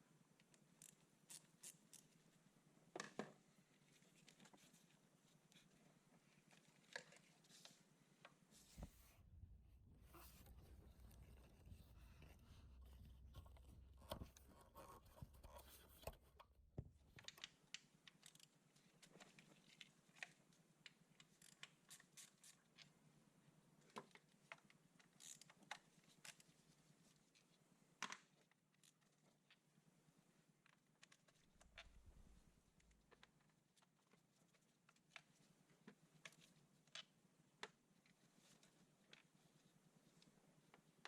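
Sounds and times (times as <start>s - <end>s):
light scratching: 8.6s - 16.6s
low hum: 8.7s - 15.4s.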